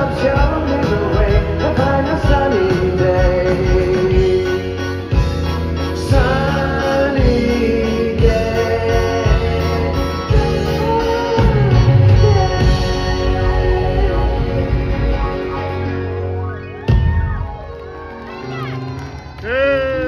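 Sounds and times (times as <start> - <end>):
drum and bass beat: 0.0 - 15.9
person singing: 0.0 - 16.3
live band playing: 0.0 - 20.0.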